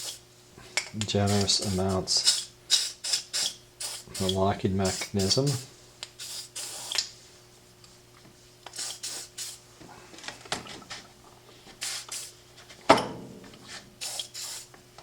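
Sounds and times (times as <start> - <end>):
aerosol spray hissing: 0.0 - 0.2, 1.3 - 7.0, 8.7 - 9.6, 11.8 - 12.4, 14.0 - 14.7.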